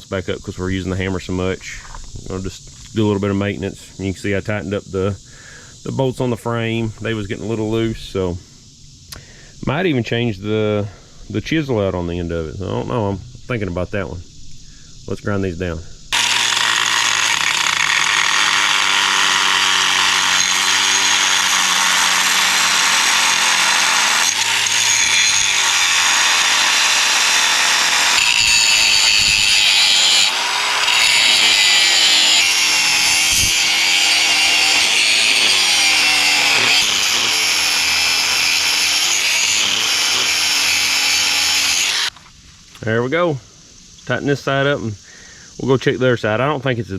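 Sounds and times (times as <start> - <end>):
power grinder grinding steel: 16.1 - 42.1.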